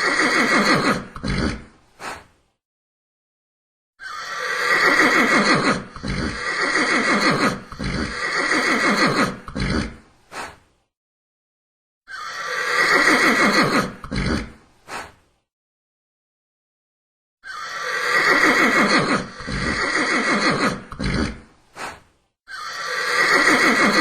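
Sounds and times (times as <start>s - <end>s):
horse neighing: 0.0s - 1.7s, 4.0s - 10.0s, 12.1s - 14.6s, 17.4s - 21.5s, 22.5s - 24.0s
horse snorting: 0.0s - 2.2s, 4.2s - 10.6s, 12.2s - 15.2s, 17.5s - 24.0s.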